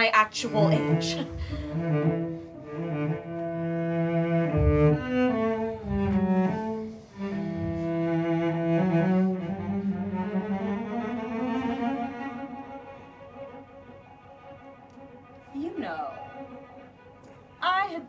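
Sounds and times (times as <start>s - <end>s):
cello bowed notes: 0.0s - 18.0s.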